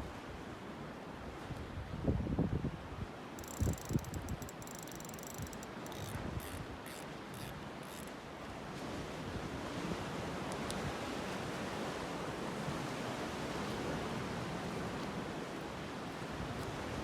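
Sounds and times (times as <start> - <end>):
wind: 0.0 - 17.0
faint clicks: 3.4 - 8.2.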